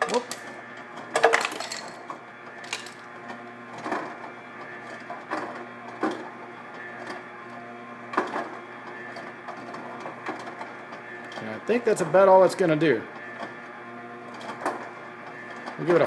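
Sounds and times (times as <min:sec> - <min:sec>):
ice dispenser motor humming: 0:00.0 - 0:16.0
ice cubes clinking into glass: 0:01.2 - 0:02.0, 0:02.7 - 0:03.0.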